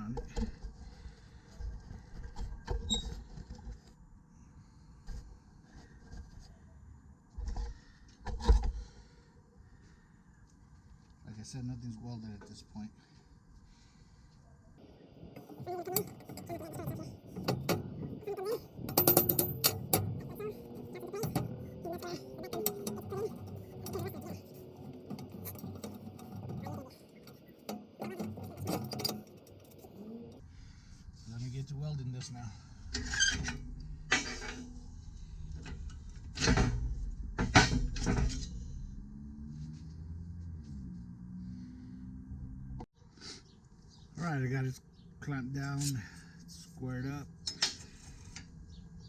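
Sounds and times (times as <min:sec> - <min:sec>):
metal parts knocking and clanking: 0:15.4 - 0:30.4, 0:32.8 - 0:34.8, 0:35.4 - 0:38.6, 0:47.4 - 0:48.1.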